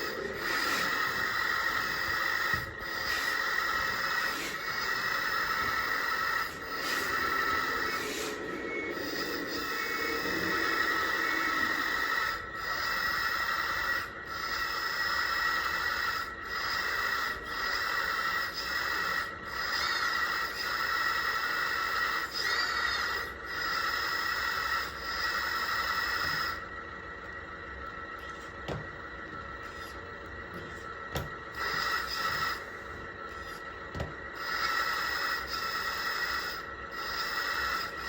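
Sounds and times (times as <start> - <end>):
hydraulic pump whining: 0.0 - 14.0
hiss: 0.0 - 26.6, 31.5 - 32.7, 34.3 - 38.0.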